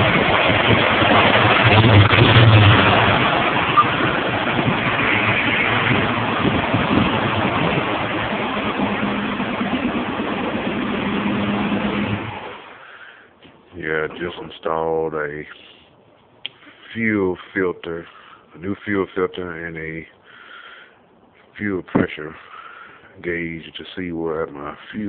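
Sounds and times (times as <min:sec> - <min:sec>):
car engine idling: 0:00.1 - 0:13.0.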